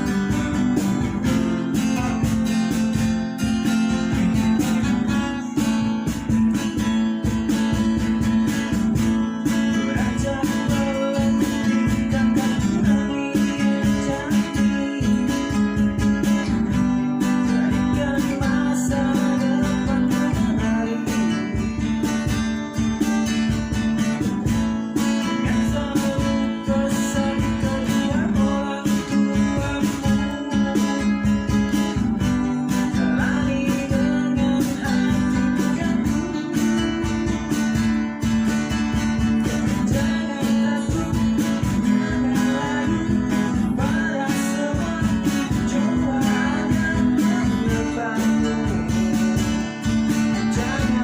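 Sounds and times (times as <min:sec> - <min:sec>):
acoustic guitars strumming: 0:00.0 - 0:51.0
cajon beat: 0:00.0 - 0:51.0.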